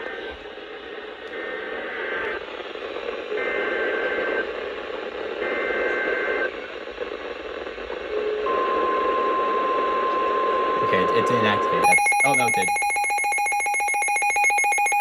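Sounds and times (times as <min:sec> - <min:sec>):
radio static: 0:10.8 - 0:13.0
steady alert tone: 0:10.8 - 0:15.0
two-tone digital data warble: 0:10.8 - 0:15.0.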